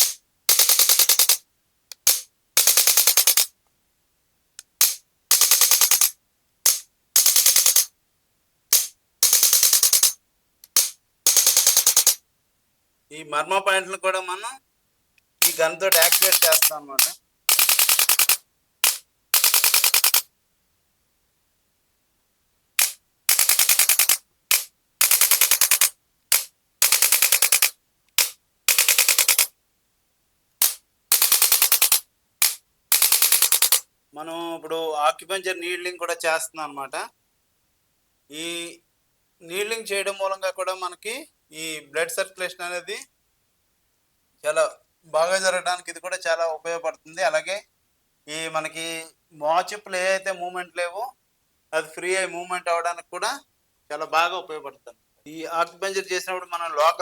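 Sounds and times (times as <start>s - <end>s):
adjusting gun rapid clicking: 0.0s - 3.5s, 4.6s - 7.9s, 8.7s - 12.2s, 15.4s - 20.3s, 22.8s - 29.5s, 30.6s - 33.8s.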